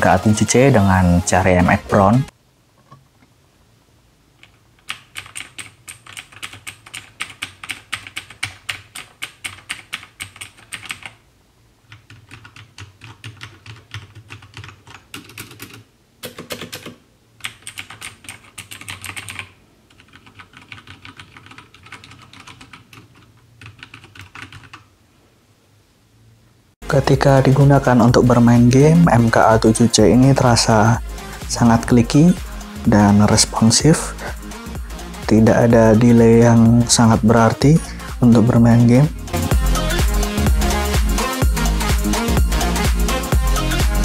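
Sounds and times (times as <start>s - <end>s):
typing on mechanical keyboard: 4.4s - 11.2s, 11.9s - 24.9s.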